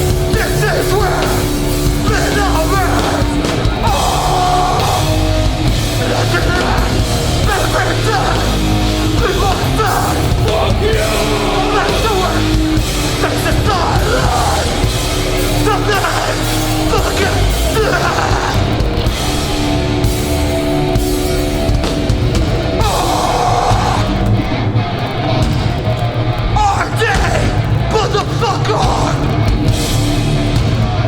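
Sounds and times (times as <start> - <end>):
punk band playing live: 0.0 - 31.0
person singing: 0.2 - 19.5, 22.8 - 24.2.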